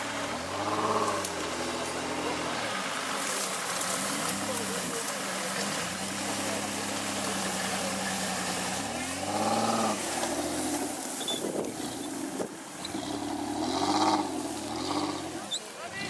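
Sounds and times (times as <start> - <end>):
off-road vehicle engine revving: 0.0 - 16.0.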